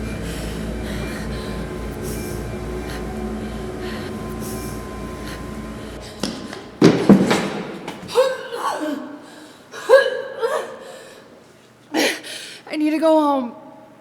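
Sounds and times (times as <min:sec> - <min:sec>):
steady low drone: 0:00.0 - 0:08.3.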